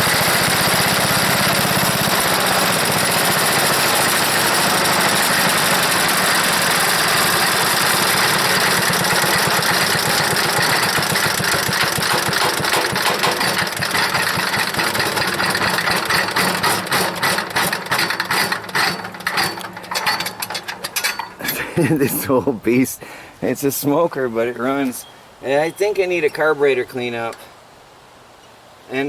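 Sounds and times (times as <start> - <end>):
small engine running: 0.0 - 21.7.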